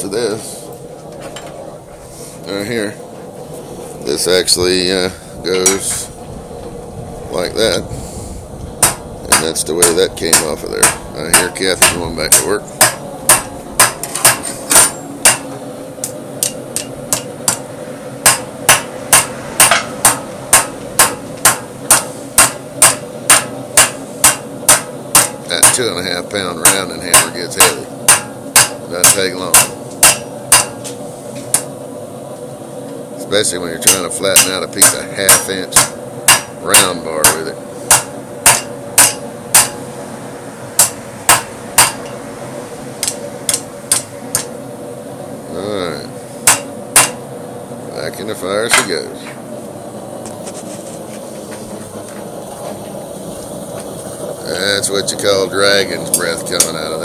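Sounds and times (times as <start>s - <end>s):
faint steady hum: 0.0s - 57.0s
hammer striking hot metal on anvil: 8.8s - 15.6s, 16.4s - 26.0s, 26.6s - 30.9s, 31.5s - 31.7s, 33.8s - 39.9s, 40.7s - 42.2s, 43.0s - 44.6s, 46.4s - 47.3s, 48.7s - 49.0s, 56.0s - 56.9s.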